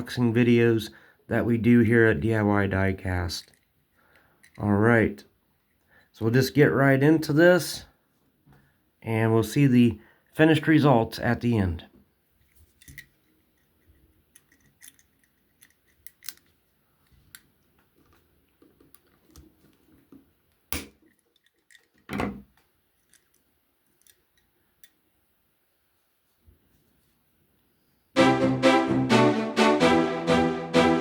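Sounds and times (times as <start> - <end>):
tools clicking and tapping: 12.8 - 16.5.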